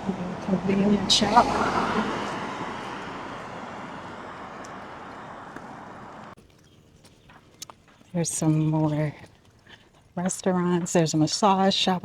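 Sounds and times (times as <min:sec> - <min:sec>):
vehicle passing: 0:00.0 - 0:06.4.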